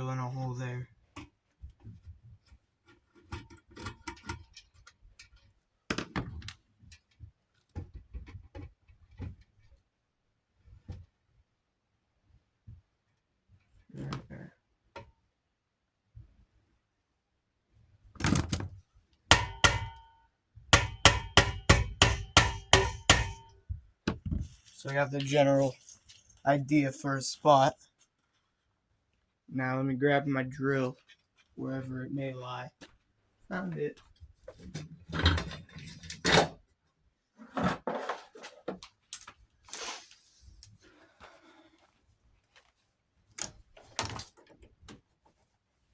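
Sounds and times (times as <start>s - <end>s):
hammer striking metal: 19.3s - 20.1s, 20.8s - 23.6s.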